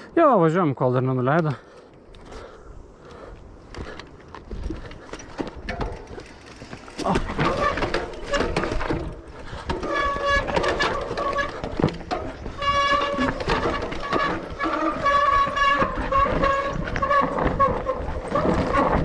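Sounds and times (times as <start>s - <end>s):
bike rattling on rough ground: 1.2s - 19.0s
bicycle brakes squealing: 6.9s - 9.2s, 9.8s - 19.0s.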